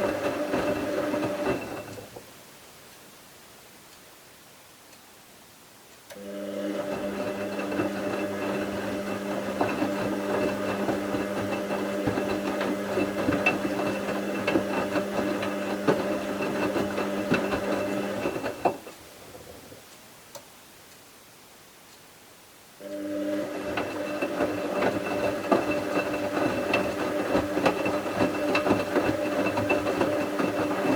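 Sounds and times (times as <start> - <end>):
washing machine motor humming: 0.0 - 2.1, 6.1 - 19.0, 22.8 - 30.9
load tumbling and clicking: 23.8 - 30.9.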